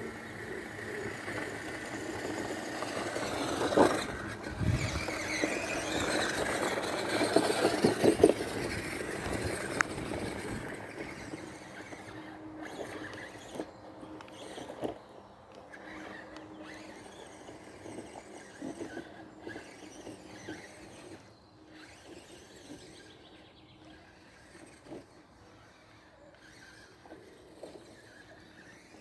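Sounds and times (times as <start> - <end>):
electric motors whining: 0.0 - 29.0.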